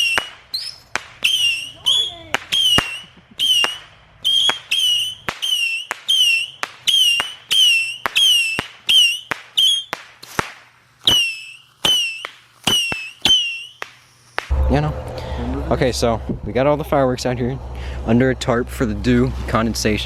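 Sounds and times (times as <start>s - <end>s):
firework whistles and pops: 0.0s - 14.5s.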